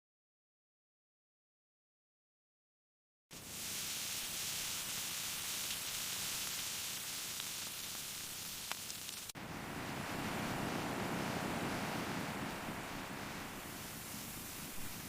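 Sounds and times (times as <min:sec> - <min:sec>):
static-like hiss: 0:03.3 - 0:15.0
faint clicks: 0:05.6 - 0:09.4.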